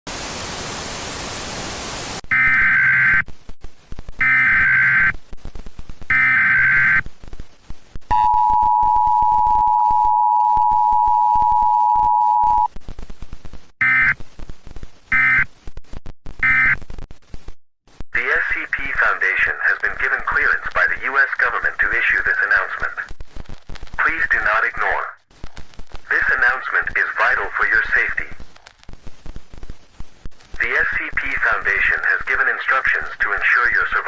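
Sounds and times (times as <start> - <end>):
static hiss: 0.1 - 8.1, 12.6 - 34.0
two-tone attention signal: 8.1 - 12.7.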